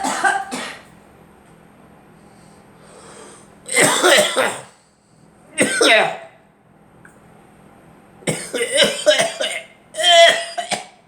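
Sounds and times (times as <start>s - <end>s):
person coughing: 0.0s - 0.9s, 3.7s - 4.8s, 5.6s - 6.3s, 8.3s - 11.0s.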